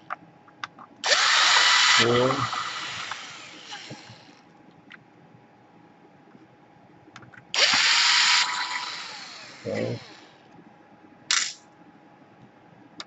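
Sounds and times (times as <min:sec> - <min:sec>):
electric screwdriver motor whining: 0:01.0 - 0:04.3, 0:07.6 - 0:10.2.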